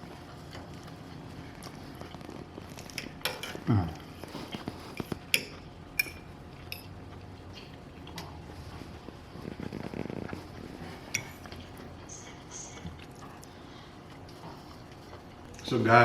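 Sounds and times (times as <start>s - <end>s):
utensils clinking against a dish: 2.9s - 3.6s, 4.5s - 6.9s.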